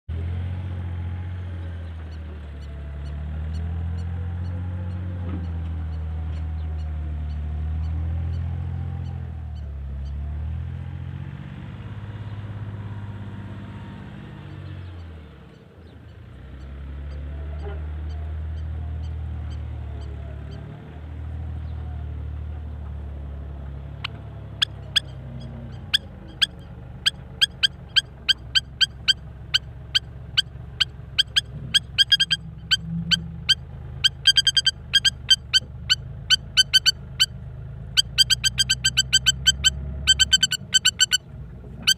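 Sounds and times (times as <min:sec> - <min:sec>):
low engine-like rumble: 0:00.1 - 0:41.9
sharp bird chirps: 0:24.0 - 0:37.3, 0:38.0 - 0:41.2.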